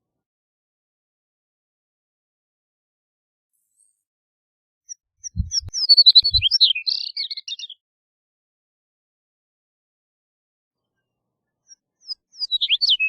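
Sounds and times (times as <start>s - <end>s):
bird song warble: 4.9s - 7.8s, 11.6s - 13.0s
low thumps: 5.2s - 6.5s.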